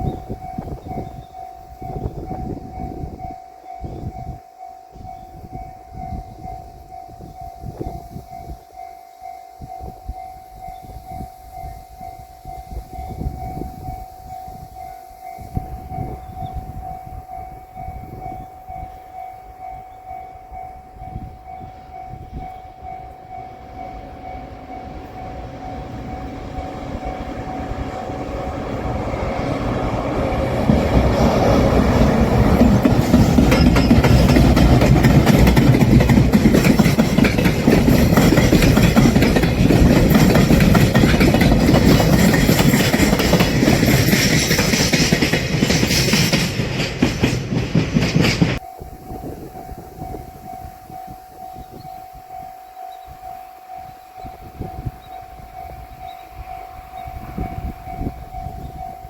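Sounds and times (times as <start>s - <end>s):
freight train rumbling past: 0.0s - 4.4s, 5.0s - 59.0s
level-crossing bell clanging: 0.0s - 59.0s
wheels clattering over rail joints: 23.3s - 48.7s.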